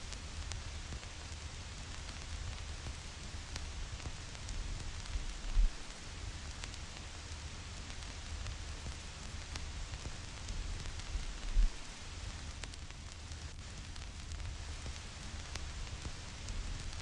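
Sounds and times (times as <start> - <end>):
vinyl record crackle: 0.0 - 17.0
low rumble: 5.1 - 5.9.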